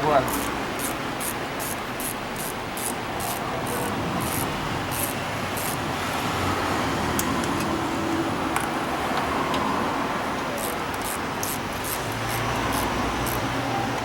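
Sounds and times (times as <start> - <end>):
torque wrench ratcheting: 0.0 - 5.9, 10.6 - 13.5
workshop background noise: 0.0 - 14.0
sharp clicks of wrench: 0.2 - 5.8, 10.6 - 13.5.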